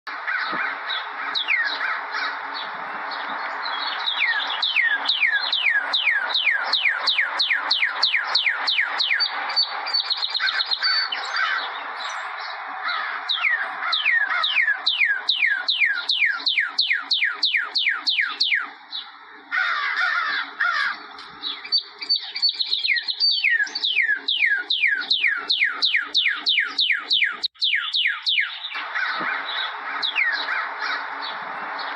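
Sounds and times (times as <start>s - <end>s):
birds chirping: 0.1s - 31.9s
bird whistling downward-sliding note: 3.8s - 11.4s.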